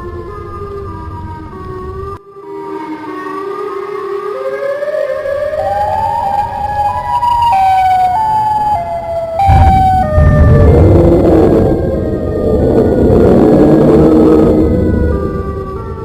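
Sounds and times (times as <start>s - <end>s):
siren-like electronic tones: 5.4s - 16.0s
loud low rumble: 9.4s - 15.5s.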